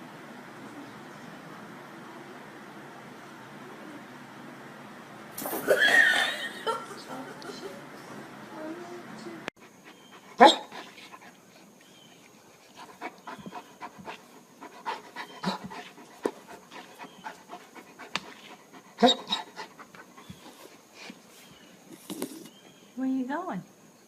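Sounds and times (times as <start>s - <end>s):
dog panting: 9.6s - 11.8s, 12.4s - 21.3s.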